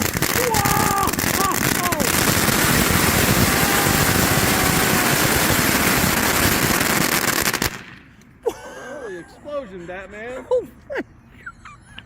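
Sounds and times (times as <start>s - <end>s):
firework fountain crackling hiss: 0.0s - 8.1s.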